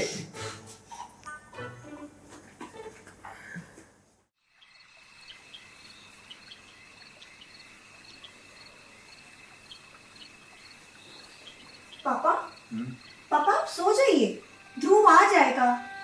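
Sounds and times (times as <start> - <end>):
crickets chirping: 4.4 - 16.0.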